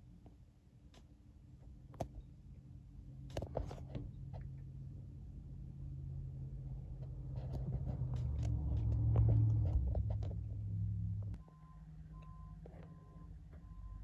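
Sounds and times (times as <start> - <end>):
heavy vehicle engine rumbling: 6.7 - 11.4.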